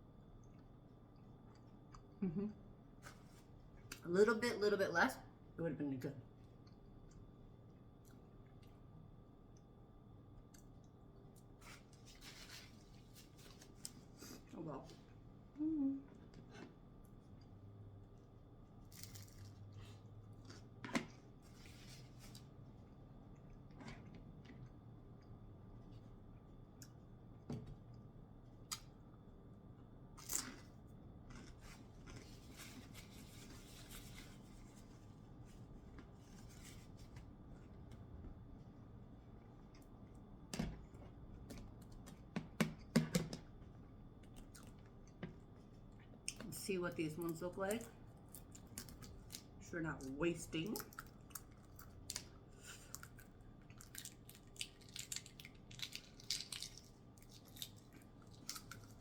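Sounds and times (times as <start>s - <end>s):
low steady hum: 0.0s - 59.0s
faint rustling and handling: 11.5s - 15.0s, 21.4s - 22.8s, 31.5s - 37.8s.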